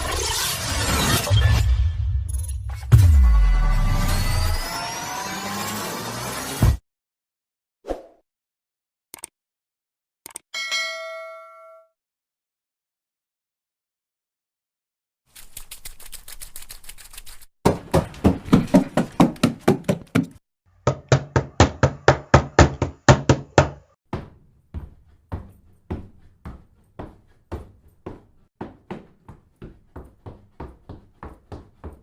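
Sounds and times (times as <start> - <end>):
running footsteps: 15.4 - 20.4, 24.1 - 32.0.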